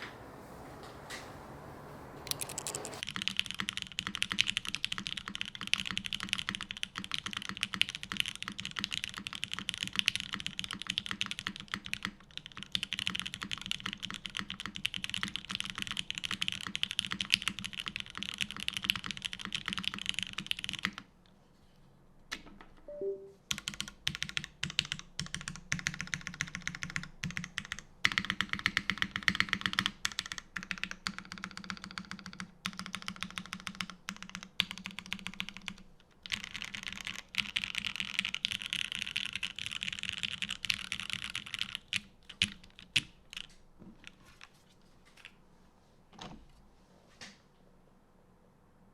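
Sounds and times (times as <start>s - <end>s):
typing on mechanical keyboard: 2.3s - 21.1s, 22.3s - 44.5s
short low tones: 22.9s - 23.4s.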